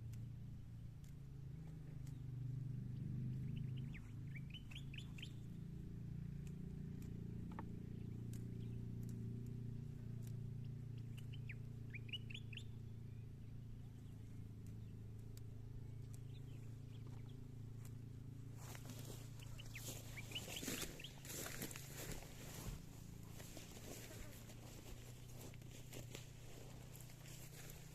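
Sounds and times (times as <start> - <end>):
steady low hum: 0.0 - 27.9
birds chirping: 1.7 - 9.6, 10.2 - 27.9
crackly rustling: 14.6 - 27.9.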